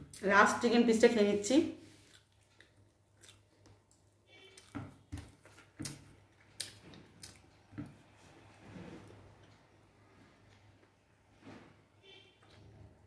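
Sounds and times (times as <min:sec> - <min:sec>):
soft chewing clicks and smacks: 0:02.0 - 0:08.0.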